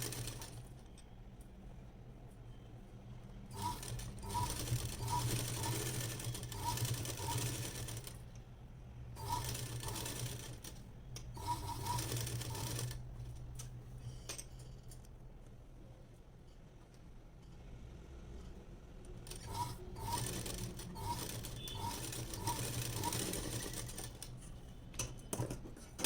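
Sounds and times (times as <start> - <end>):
sewing machine stitching: 0.0 - 0.7, 3.5 - 8.2, 9.2 - 10.8, 11.4 - 13.0, 19.2 - 24.3.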